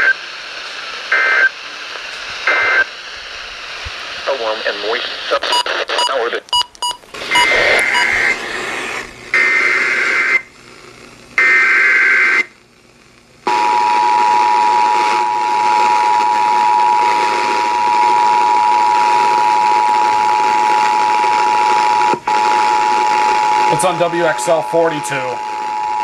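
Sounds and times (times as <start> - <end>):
steady warning alarm tone: 5.5 - 8.3, 13.5 - 26.0.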